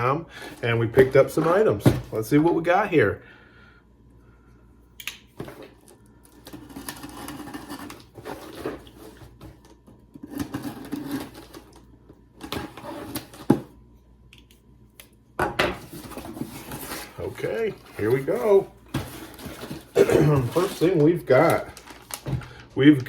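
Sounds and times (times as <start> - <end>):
cardboard box rustling and scraping: 6.8 - 9.6, 15.8 - 21.0.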